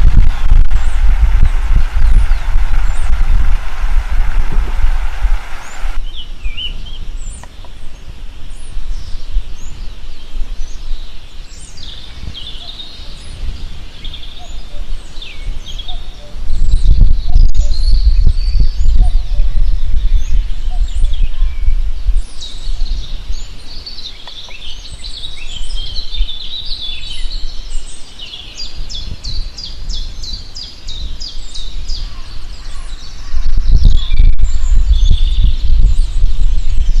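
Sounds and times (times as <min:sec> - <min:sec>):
low rumble: 0:00.0 - 0:06.0, 0:33.2 - 0:37.0
songbirds chirping: 0:00.0 - 0:37.0.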